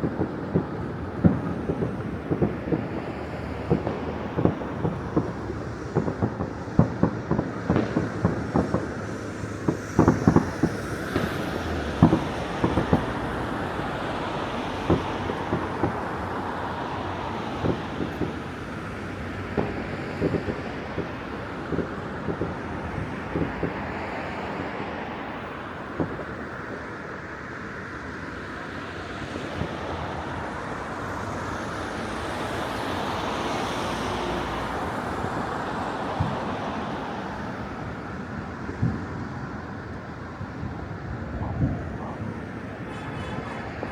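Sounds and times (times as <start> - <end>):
distant fireworks bangs and pops: 0.0 - 43.9
traffic rush: 0.0 - 43.9
wind noise: 35.2 - 43.9.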